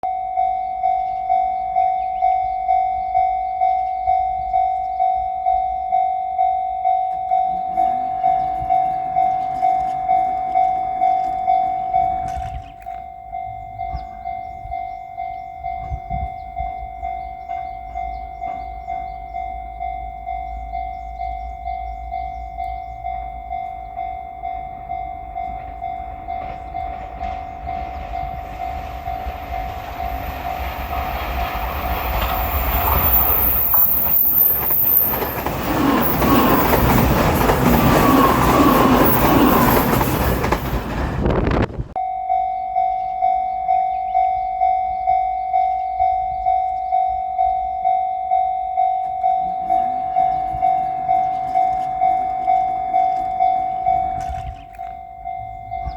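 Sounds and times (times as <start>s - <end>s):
level-crossing bell ringing: 0.0s - 41.0s, 42.0s - 55.9s
train rumble and wheel clatter: 0.3s - 42.0s, 43.6s - 55.9s
high squeal: 31.8s - 41.4s.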